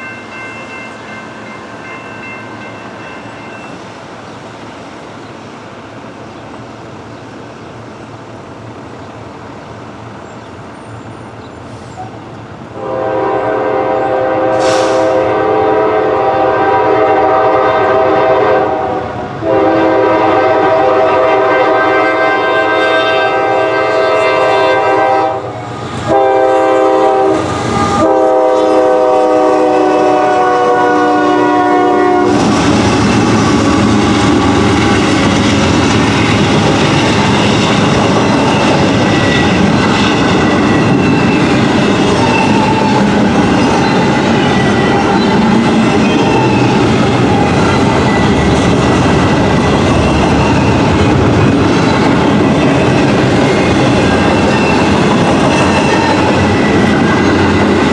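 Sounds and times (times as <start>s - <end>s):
train cars rumbling and clacking: 0.0s - 57.9s
locomotive air horn blasts: 12.8s - 32.4s.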